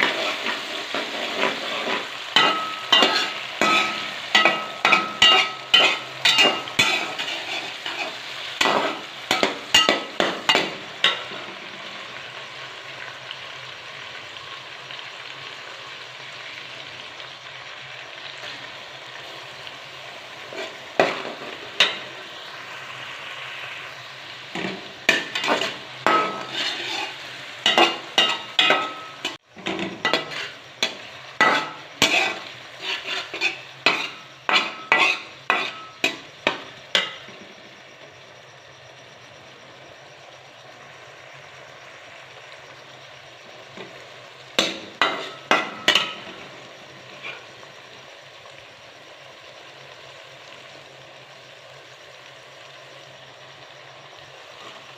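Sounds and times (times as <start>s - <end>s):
spatula scraping cooking pot: 0.0s - 11.3s, 24.6s - 36.2s
frying sizzle: 0.0s - 54.9s.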